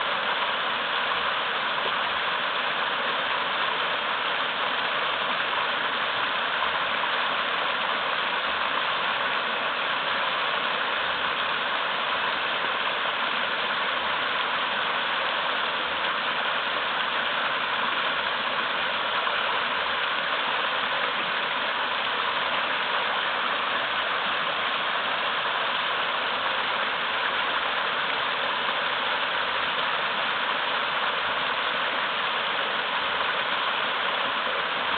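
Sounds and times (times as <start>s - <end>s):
waterfall rushing over boulders: 0.0s - 34.9s.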